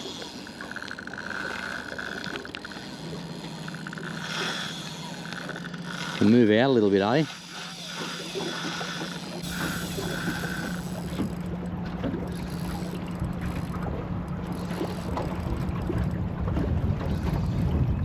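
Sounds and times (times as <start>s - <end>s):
steady low hum: 0.0s - 17.2s
wind rumbling on microphone: 8.5s - 18.0s.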